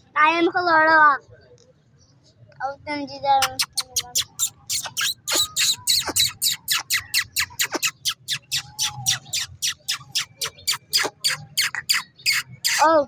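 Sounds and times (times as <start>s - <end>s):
birds chirping and squawking: 3.4s - 13.0s.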